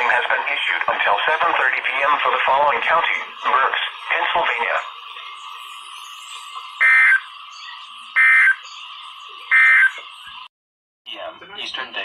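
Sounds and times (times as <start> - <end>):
radio static hiss: 0.0 - 10.5
warbling data tones: 0.1 - 10.5.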